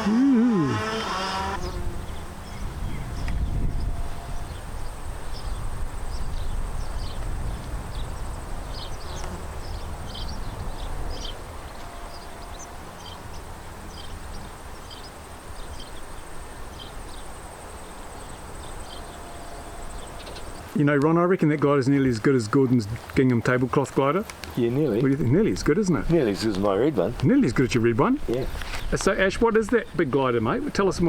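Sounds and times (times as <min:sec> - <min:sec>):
wind rumble on microphone: 0:01.6 - 0:20.7.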